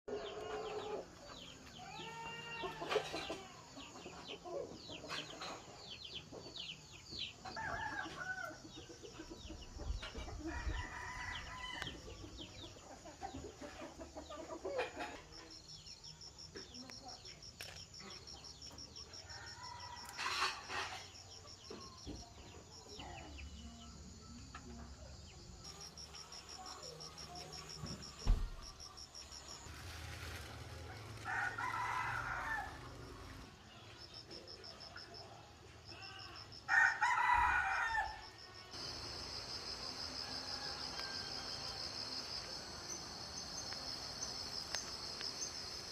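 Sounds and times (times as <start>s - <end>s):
insects chirping: 0.1s - 45.9s
rooster crowing: 7.5s - 8.7s, 10.4s - 12.0s, 19.2s - 20.8s, 31.0s - 33.3s, 36.4s - 39.0s, 40.1s - 41.9s
fowl clucking: 13.0s - 15.4s.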